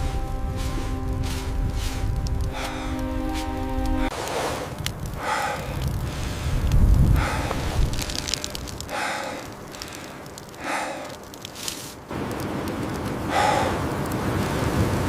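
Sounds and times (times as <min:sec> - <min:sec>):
wind rumble on microphone: 0:00.0 - 0:09.2, 0:12.1 - 0:15.0
heavy breathing: 0:01.4 - 0:12.0, 0:13.3 - 0:13.9.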